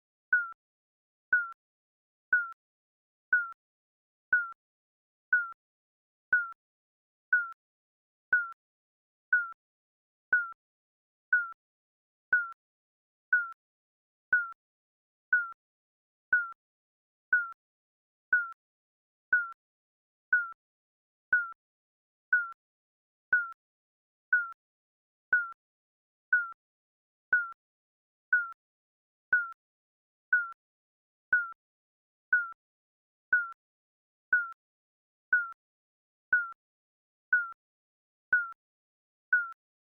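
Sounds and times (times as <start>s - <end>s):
timer beeping: 0.3s - 0.6s, 1.3s - 1.6s, 2.3s - 2.6s, 3.3s - 3.6s, 4.3s - 4.6s, 5.3s - 5.6s, 6.3s - 6.6s, 7.3s - 7.6s, 8.3s - 8.6s, 9.3s - 9.6s, 10.3s - 10.6s, 11.3s - 11.6s, 12.3s - 12.6s, 13.3s - 13.6s, 14.3s - 14.6s, 15.3s - 15.6s, 16.3s - 16.6s, 17.3s - 17.6s, 18.3s - 18.6s, 19.3s - 19.6s, 20.3s - 20.6s, 21.3s - 21.6s, 22.3s - 22.6s, 23.3s - 23.6s, 24.3s - 24.6s, 25.3s - 25.6s, 26.3s - 26.6s, 27.3s - 27.6s, 28.3s - 28.6s, 29.3s - 29.6s, 30.3s - 30.6s, 31.3s - 31.6s, 32.3s - 32.6s, 33.3s - 33.6s, 34.4s - 34.6s, 35.3s - 35.6s, 36.3s - 36.6s, 37.3s - 37.6s, 38.3s - 38.6s, 39.3s - 39.6s.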